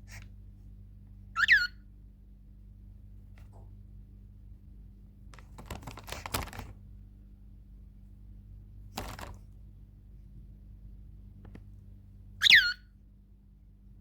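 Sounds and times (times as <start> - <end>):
low steady hum: 0.0 - 14.0
bird scratching and pecking: 5.3 - 6.8, 8.9 - 9.6.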